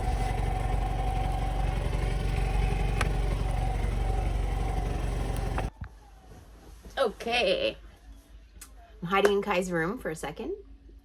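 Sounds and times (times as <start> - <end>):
vehicle engine idling: 0.0 - 5.7.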